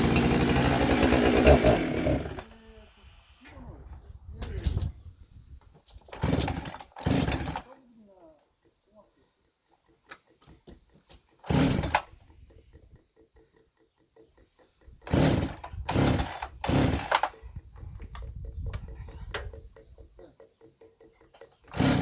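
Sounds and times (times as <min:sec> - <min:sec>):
chainsaw idling and revving: 0:00.0 - 0:03.0, 0:06.2 - 0:07.7, 0:11.4 - 0:12.1, 0:15.0 - 0:17.4, 0:21.7 - 0:22.0.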